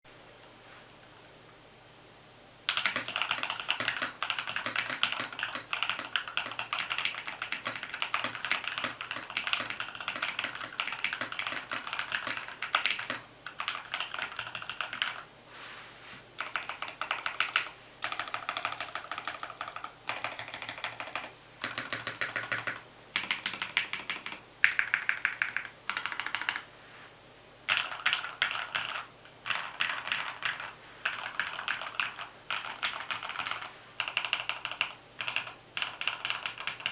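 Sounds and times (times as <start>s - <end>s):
typing on mechanical keyboard: 2.7s - 15.2s, 16.4s - 26.7s, 27.7s - 36.9s.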